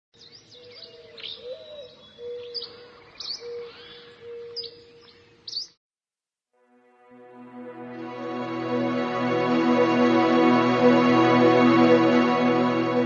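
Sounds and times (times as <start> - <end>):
birds chirping: 0.2 - 5.8.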